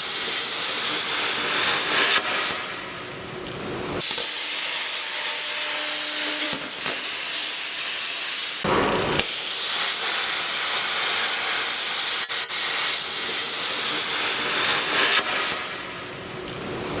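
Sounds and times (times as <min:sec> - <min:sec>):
plasma cutter arc hissing: 0:00.0 - 0:17.0.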